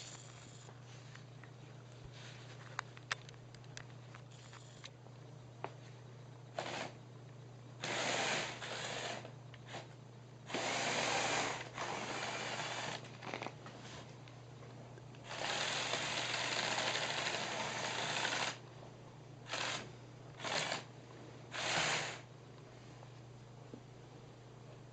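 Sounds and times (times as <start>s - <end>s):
electric motors whirring through gears: 6.5s - 7.0s, 7.8s - 9.9s, 10.5s - 13.5s, 15.2s - 18.6s, 19.5s - 20.9s, 21.5s - 22.3s.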